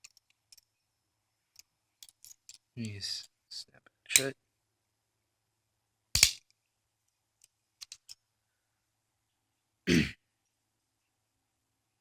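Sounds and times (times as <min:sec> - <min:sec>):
handcuffs snapping and clicking: 0:06.2 - 0:06.5, 0:07.8 - 0:08.2
throat clearing: 0:09.9 - 0:10.2.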